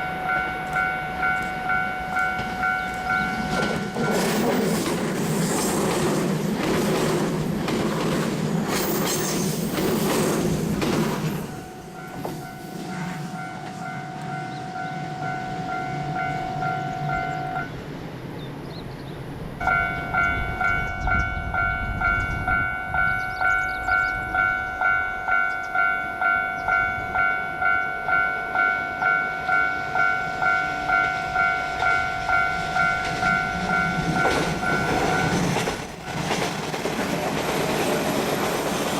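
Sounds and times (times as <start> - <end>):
level crossing warning bell: 0.0 - 5.6, 11.4 - 17.8, 19.6 - 36.4
train wheels clattering: 0.0 - 14.7, 31.8 - 38.9.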